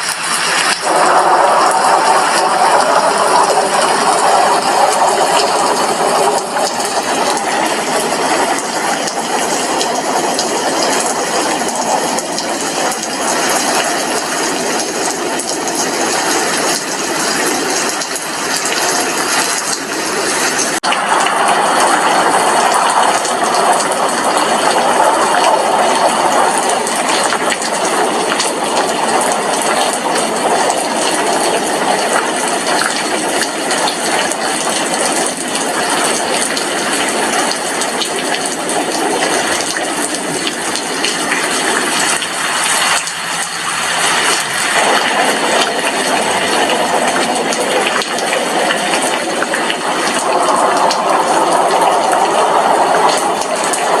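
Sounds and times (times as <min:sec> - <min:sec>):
rain on a glass window: 0:00.0 - 0:54.0.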